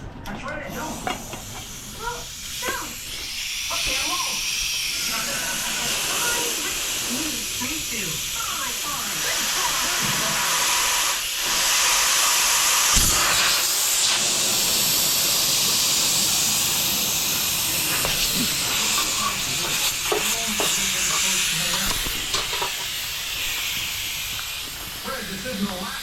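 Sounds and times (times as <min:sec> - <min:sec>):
loud steady hiss: 0:00.6 - 0:26.0.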